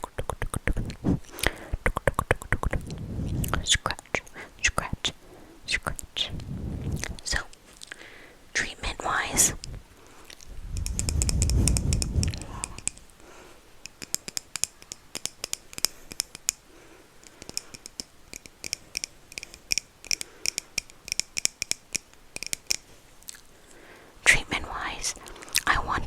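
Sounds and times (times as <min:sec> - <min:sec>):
low rumble: 0:10.4 - 0:13.1
crisp clicks and taps: 0:13.8 - 0:16.6, 0:17.2 - 0:23.4.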